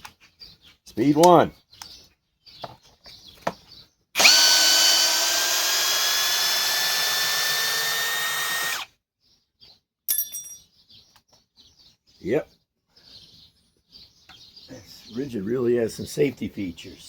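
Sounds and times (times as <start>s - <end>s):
hammer drill motor whine: 4.2s - 8.9s.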